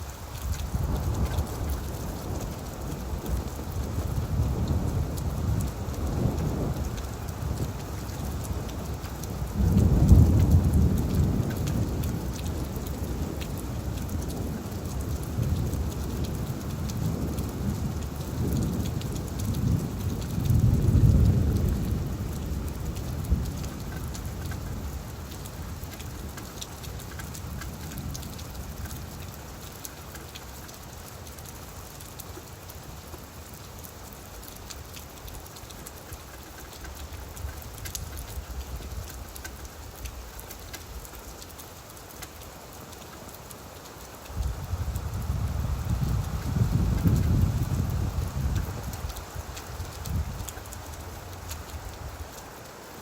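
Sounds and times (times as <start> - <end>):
rain falling on leaves: 0.0 - 53.0
thunder rumbling: 0.7 - 25.0, 44.4 - 50.5.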